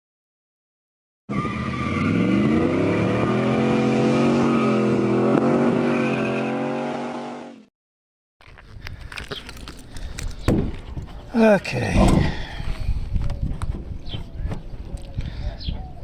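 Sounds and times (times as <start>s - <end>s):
car engine revving: 1.3s - 7.7s.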